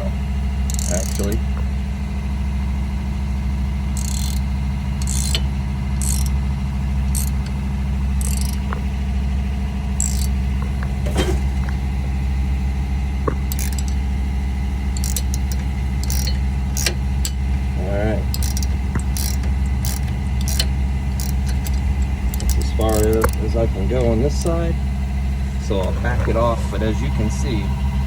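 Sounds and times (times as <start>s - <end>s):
steady low drone: 0.0s - 28.0s
wrench scraping metal: 0.7s - 1.4s, 3.9s - 6.4s, 7.1s - 8.9s, 10.0s - 11.8s, 13.3s - 14.1s, 14.8s - 17.6s, 18.2s - 24.6s.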